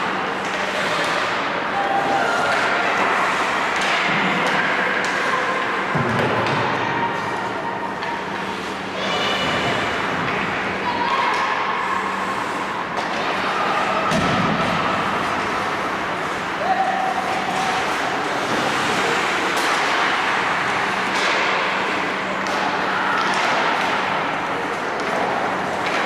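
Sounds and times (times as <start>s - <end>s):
hockey sticks and puck knocking: 2.4s - 6.9s, 17.2s - 26.0s.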